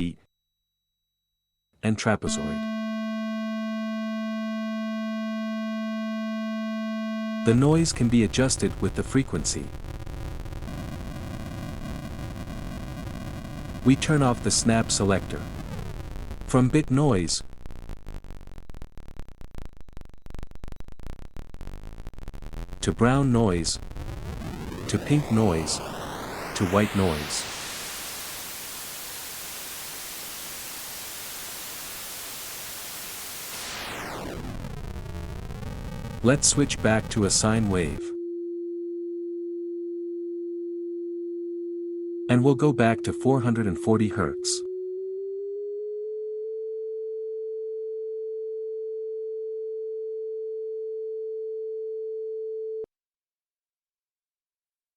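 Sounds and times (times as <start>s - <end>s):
falling pitched sweep: 2.3s - 18.2s, 21.7s - 32.0s
synthesized white noise hiss: 2.3s - 19.4s, 21.1s - 38.0s.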